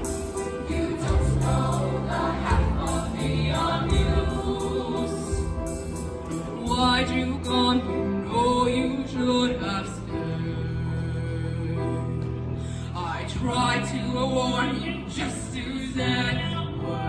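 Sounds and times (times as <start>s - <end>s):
choir singing: 0.0s - 8.1s
instrumental backing music: 0.0s - 17.0s.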